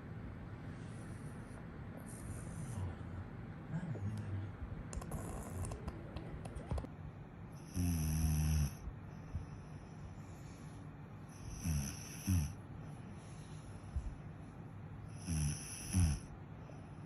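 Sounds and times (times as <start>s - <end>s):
person snoring: 7.6s - 8.8s, 11.4s - 12.6s, 15.2s - 16.3s.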